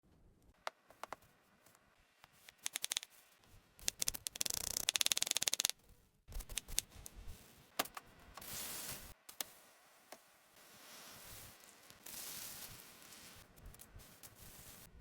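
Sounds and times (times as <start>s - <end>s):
sharp clicks: 2.5s - 3.1s, 3.8s - 6.9s.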